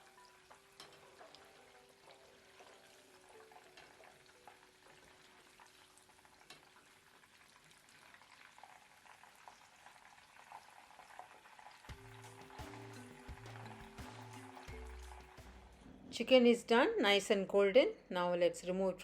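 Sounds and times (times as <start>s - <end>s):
chicken sizzling in hot oil: 0.0s - 15.7s.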